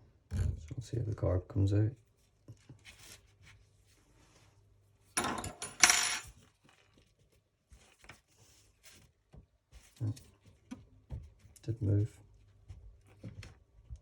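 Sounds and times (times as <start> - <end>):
metal tools clinking and scraping: 5.2 - 6.3.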